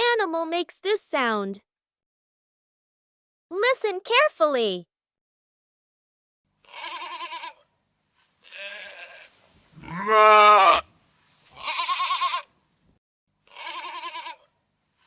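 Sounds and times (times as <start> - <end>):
sheep bleating: 6.6 - 7.7, 8.4 - 10.9, 11.5 - 12.5, 13.4 - 14.5.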